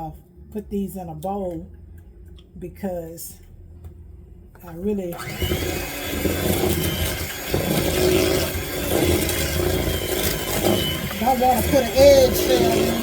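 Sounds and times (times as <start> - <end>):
electric hand mixer beating batter: 5.2 - 13.0.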